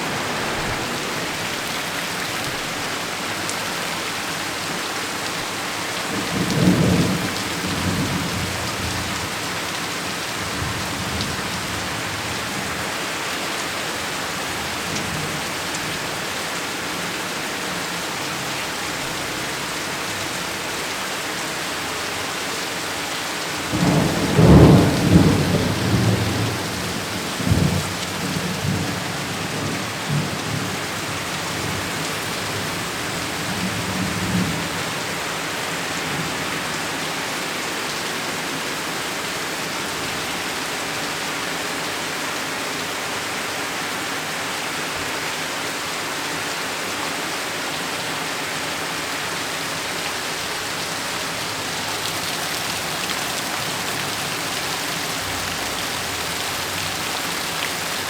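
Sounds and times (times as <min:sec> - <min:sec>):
thunderclap and rumbling thunder: 0:00.0 - 0:02.2, 0:23.7 - 0:30.9
heavy rain hissing: 0:00.0 - 0:45.1, 0:48.6 - 0:58.0.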